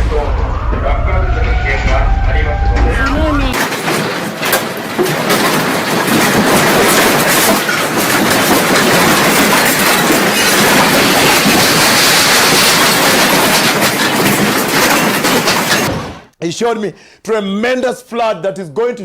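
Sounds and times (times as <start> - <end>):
building rattling in earthquake: 0.0 - 16.3
loose objects knocking and clinking: 3.6 - 15.9.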